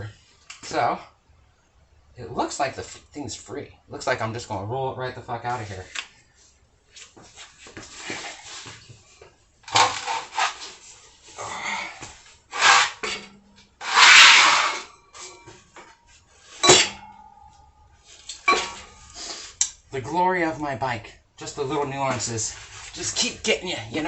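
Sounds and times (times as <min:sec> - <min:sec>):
metal clanking and scraping: 0:09.7 - 0:10.7, 0:12.6 - 0:19.1
metal ringing tone: 0:16.6 - 0:19.1.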